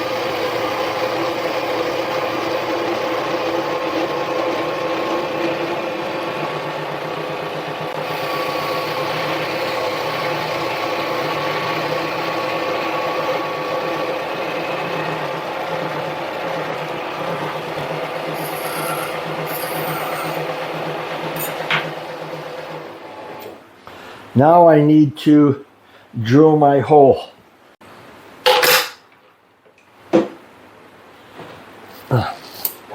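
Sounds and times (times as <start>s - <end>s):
lathe motor whine: 0.0s - 23.6s
tool scraping steel bar: 18.3s - 20.5s.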